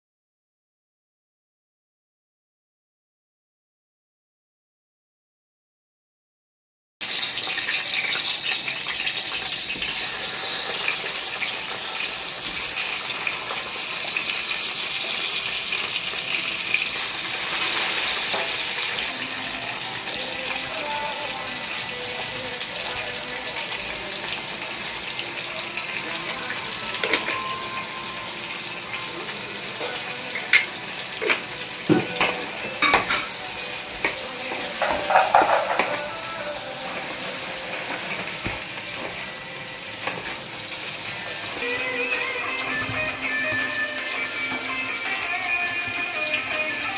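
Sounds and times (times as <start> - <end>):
food sizzling in hot oil: 7.0 - 46.9
utensil scraping a pan: 34.0 - 36.1.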